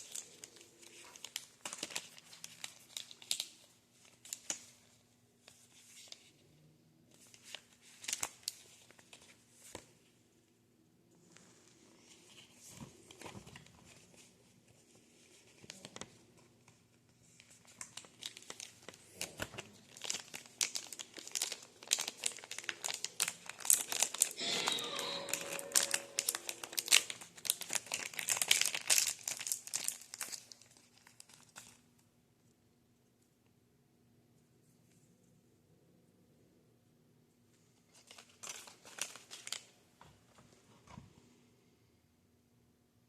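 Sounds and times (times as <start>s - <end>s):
packaging crinkling by hand: 0.0s - 6.4s, 7.1s - 10.0s, 12.0s - 32.0s, 37.9s - 39.8s.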